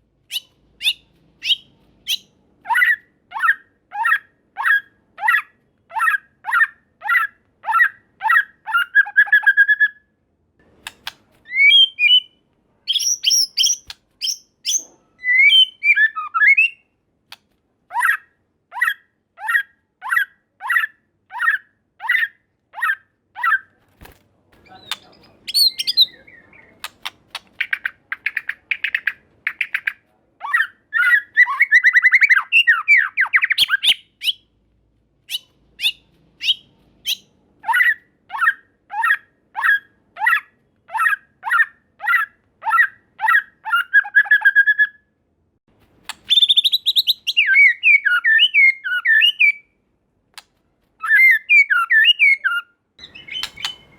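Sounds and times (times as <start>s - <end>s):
bird singing whistled notes: 11.5s - 16.9s, 24.7s - 26.8s, 46.3s - 49.7s, 51.0s - 53.9s
bird chattering: 24.7s - 34.4s, 51.0s - 53.9s.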